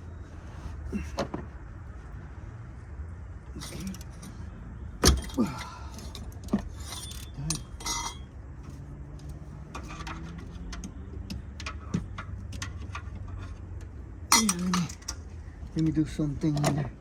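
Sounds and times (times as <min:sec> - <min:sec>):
low steady hum: 0:00.0 - 0:17.0
metal tools clinking on engine: 0:03.6 - 0:17.0.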